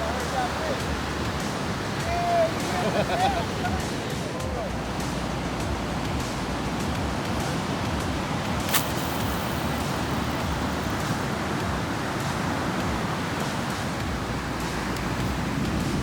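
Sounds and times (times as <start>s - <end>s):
ocean surf: 0.0s - 16.0s
wind on microphone: 0.0s - 16.0s
sharp click: 8.6s - 10.0s.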